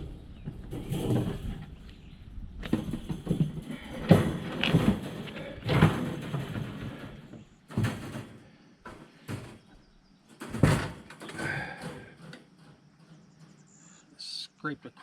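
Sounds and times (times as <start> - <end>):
wire cage panels rattling: 0.0 - 1.8, 2.6 - 9.7, 10.3 - 13.7
metal clanks: 2.6 - 9.7, 10.3 - 13.8.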